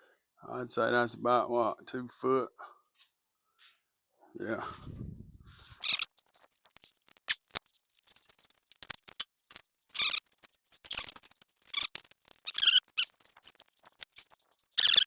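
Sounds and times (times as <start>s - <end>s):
short scratchy rasps: 5.8s - 15.0s.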